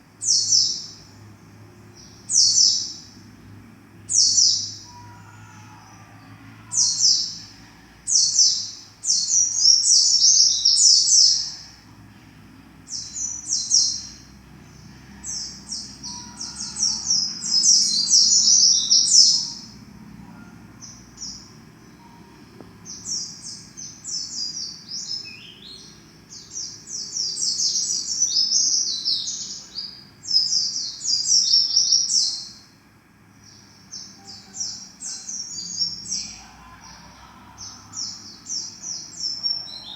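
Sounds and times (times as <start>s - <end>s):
bird twittering song: 0.2s - 1.2s, 15.2s - 19.8s.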